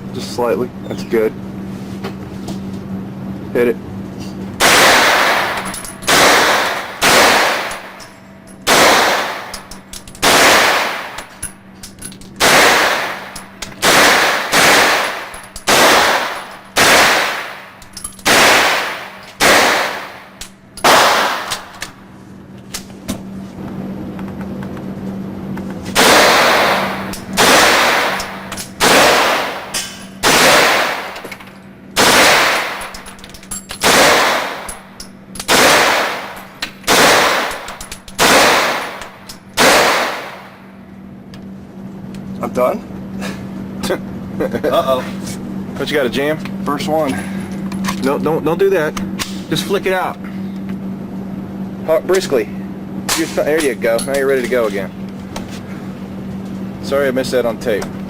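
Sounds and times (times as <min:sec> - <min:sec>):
gunshots with echoing tail: 0:04.6 - 0:08.0, 0:08.7 - 0:09.6, 0:10.2 - 0:11.3, 0:12.4 - 0:21.7, 0:26.0 - 0:31.2, 0:32.0 - 0:33.0, 0:33.8 - 0:34.8, 0:35.5 - 0:40.6.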